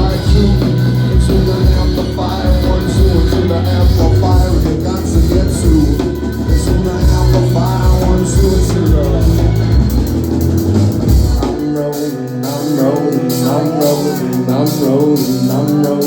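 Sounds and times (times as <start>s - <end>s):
deep bass: 0.0s - 11.9s
live rock band playing: 0.0s - 16.0s.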